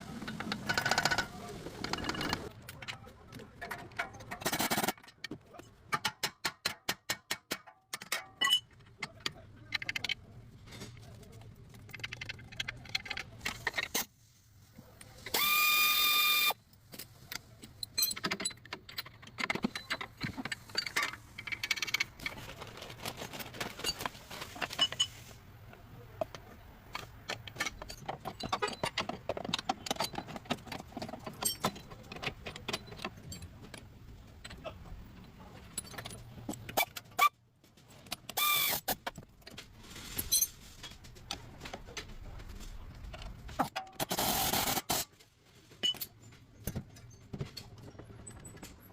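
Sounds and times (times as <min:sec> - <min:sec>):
metal tools clicking and clanking: 0:00.3 - 0:11.0, 0:16.8 - 0:22.4, 0:23.1 - 0:25.3, 0:26.2 - 0:34.6, 0:35.2 - 0:37.3, 0:45.7 - 0:48.9.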